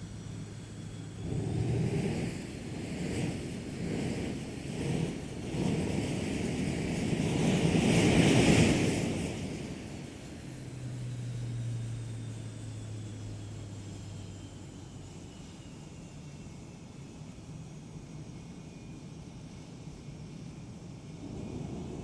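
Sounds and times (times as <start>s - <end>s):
rushing engine noise: 21.2s - 22.0s.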